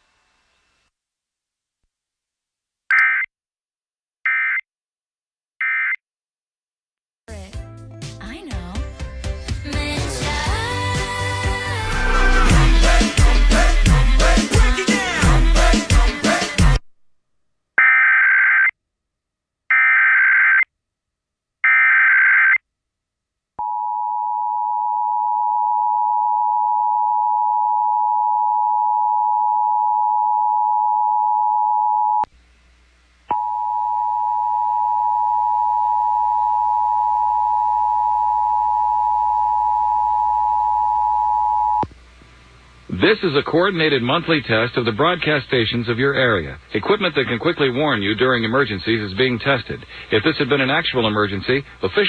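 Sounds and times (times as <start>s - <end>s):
background hiss and hum: 32.2s - 52.0s.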